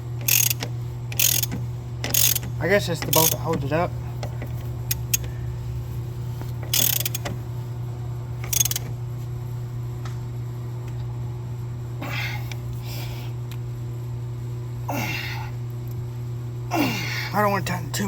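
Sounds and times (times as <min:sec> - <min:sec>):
steady low hum: 0:00.0 - 0:18.0
hand ratchet clicking: 0:00.2 - 0:05.3, 0:06.7 - 0:07.4, 0:08.4 - 0:08.9.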